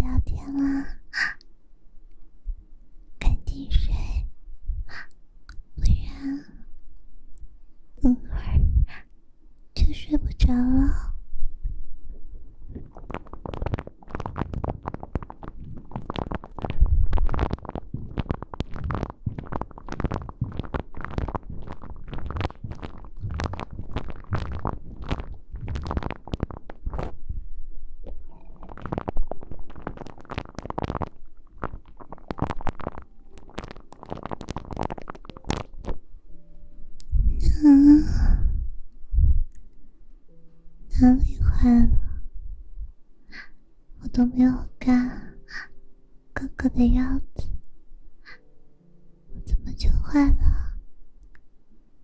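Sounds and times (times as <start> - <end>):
muffled low thumps: 11.2 - 29.7, 35.5 - 39.5
rustling on microphone: 11.4 - 39.5.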